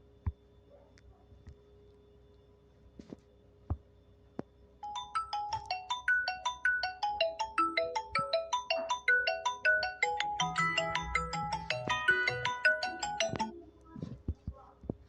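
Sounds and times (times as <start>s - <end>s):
mobile phone ringtone: 4.8s - 13.6s.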